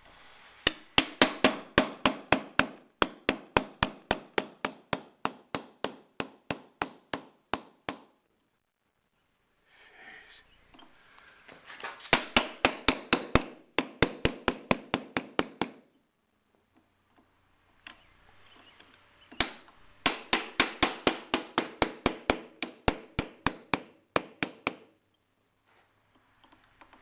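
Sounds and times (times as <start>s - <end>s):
hammer striking chisel on metal: 0.6s - 8.2s, 12.1s - 15.9s, 19.3s - 25.0s.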